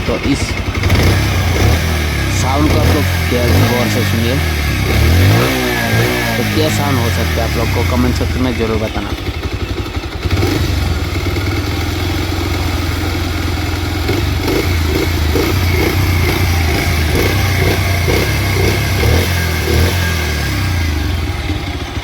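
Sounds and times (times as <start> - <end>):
engine knocking: 0.0 - 22.0
motorcycle engine running: 0.0 - 22.0.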